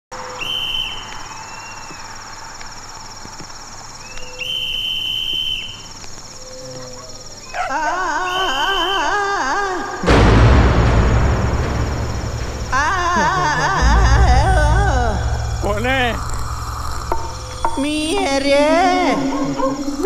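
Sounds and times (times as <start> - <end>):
crickets chirping: 0.1 - 20.0
high whistle-like tone: 0.2 - 2.0, 4.0 - 5.9, 8.3 - 9.2, 12.8 - 20.0
wavering voice-like wail: 6.6 - 10.0, 12.8 - 20.0.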